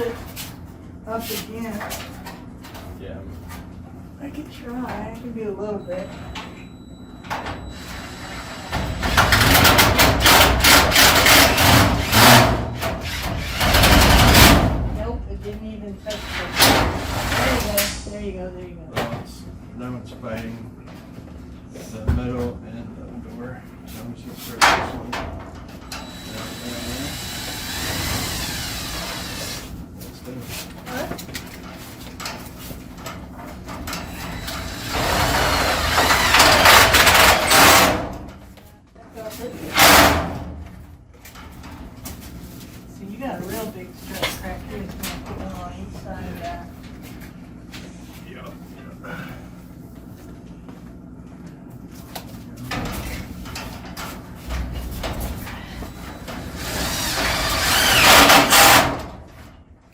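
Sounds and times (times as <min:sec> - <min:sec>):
power drill driving screw into metal: 0:34.4 - 0:38.0, 0:56.4 - 0:59.0.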